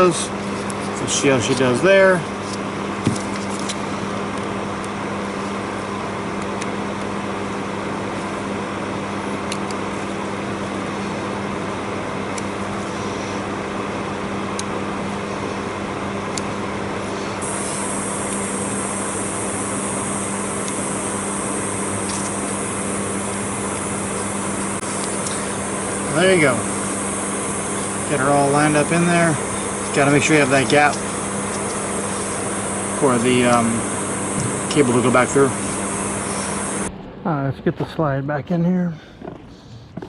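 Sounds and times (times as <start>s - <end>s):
steady mechanical hum: 0.0s - 40.0s
bright hiss: 17.4s - 36.9s.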